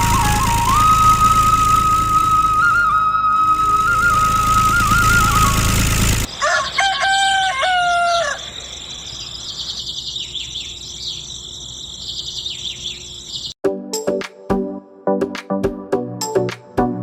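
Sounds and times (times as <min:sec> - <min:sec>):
loud steady noise: 0:00.0 - 0:06.4
rooster crowing: 0:06.3 - 0:09.3
small birds chirping: 0:06.3 - 0:13.6.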